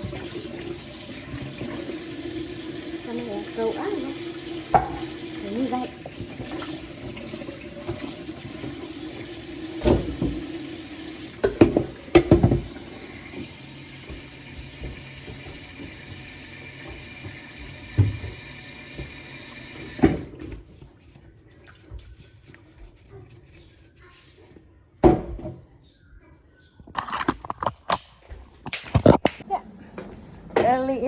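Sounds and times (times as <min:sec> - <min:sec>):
tap water running into sink: 0:00.0 - 0:20.5
dishes clunking: 0:04.6 - 0:05.4, 0:11.4 - 0:17.4.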